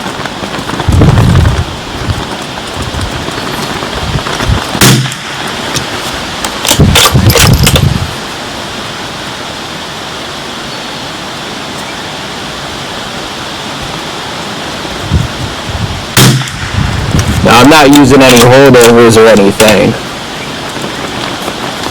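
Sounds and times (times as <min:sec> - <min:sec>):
wind buffeting microphone: 0:00.0 - 0:09.2, 0:12.2 - 0:21.9
rifle shot: 0:04.7 - 0:05.9, 0:16.2 - 0:18.4.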